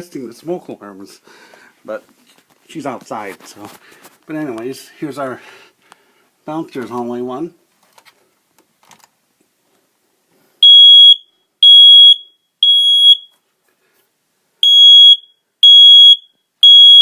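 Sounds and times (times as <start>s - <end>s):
smoke alarm beeping: 10.6s - 13.4s, 14.6s - 17.0s.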